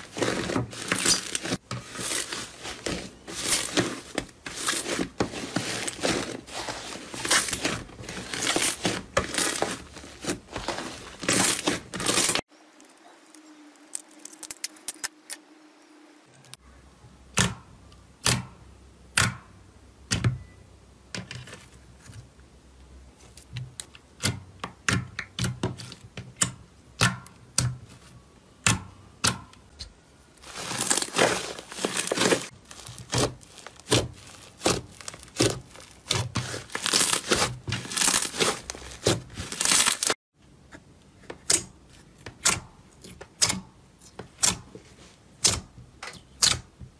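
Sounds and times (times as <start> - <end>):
slime crackling and popping: 30.4 - 40.2.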